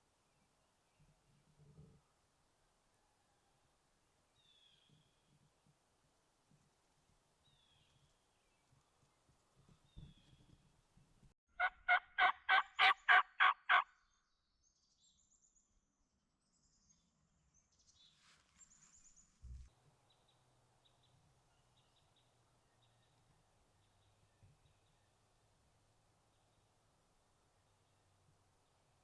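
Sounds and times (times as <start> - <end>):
turkey yelping: 11.6 - 13.8.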